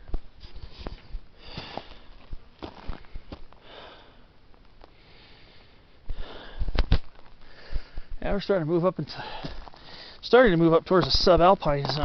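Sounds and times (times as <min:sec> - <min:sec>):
footsteps on dirt road: 0:00.1 - 0:03.9, 0:06.1 - 0:08.3, 0:09.0 - 0:12.0
person breathing heavily: 0:01.4 - 0:02.2, 0:02.9 - 0:06.8, 0:07.4 - 0:08.2, 0:09.1 - 0:10.2.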